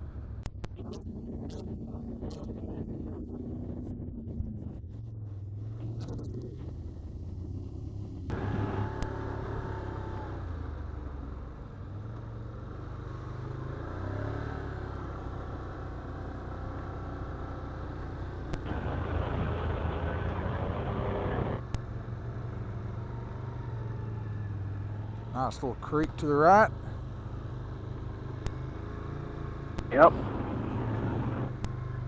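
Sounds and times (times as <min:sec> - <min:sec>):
atv engine running: 0:08.3 - 0:10.0, 0:18.5 - 0:21.8, 0:29.8 - 0:31.7.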